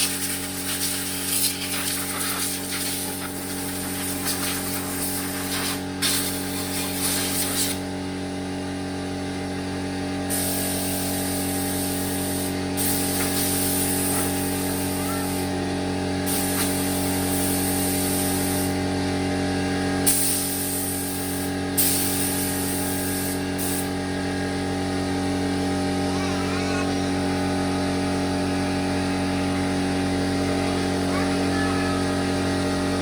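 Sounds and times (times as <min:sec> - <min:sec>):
compressed air blow gun hissing: 0:00.0 - 0:07.8, 0:10.3 - 0:15.5, 0:16.2 - 0:18.8, 0:20.0 - 0:24.0
compressor motor humming: 0:00.0 - 0:33.0.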